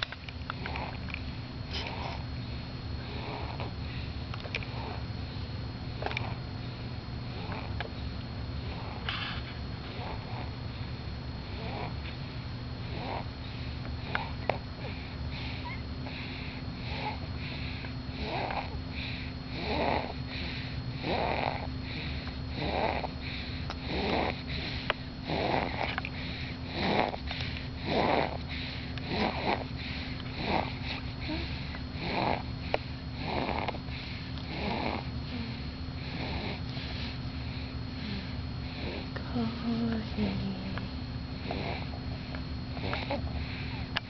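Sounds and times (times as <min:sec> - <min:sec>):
steady background hum: 0:00.0 - 0:44.0
person snoring: 0:03.0 - 0:03.7, 0:18.1 - 0:23.1, 0:23.8 - 0:27.2, 0:27.8 - 0:29.7, 0:30.4 - 0:32.5, 0:33.2 - 0:36.6, 0:37.5 - 0:42.0.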